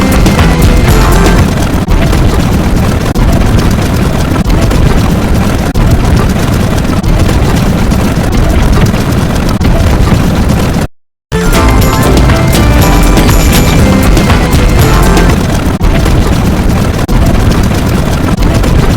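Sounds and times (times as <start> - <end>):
heavy rumbling engine noise: 0.0 - 4.7, 11.4 - 18.6.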